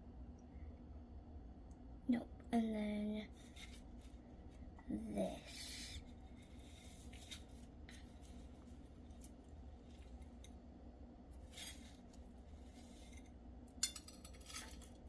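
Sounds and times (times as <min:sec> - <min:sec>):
corn flakes crunching: 0:06.1 - 0:10.6, 0:11.3 - 0:15.0.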